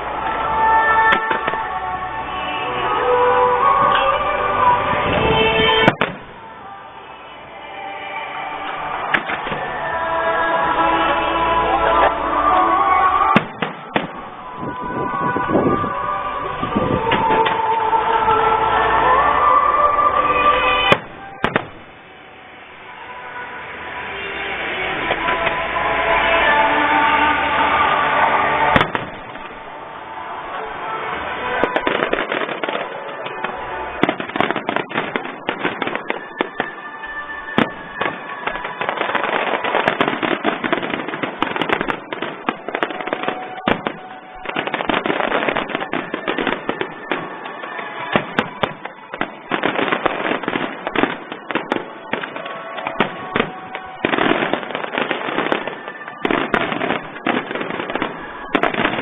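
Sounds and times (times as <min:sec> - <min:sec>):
fireworks crackle: 0:00.0 - 0:19.3, 0:20.1 - 0:59.0
fireworks shells bursting: 0:31.5 - 0:59.0.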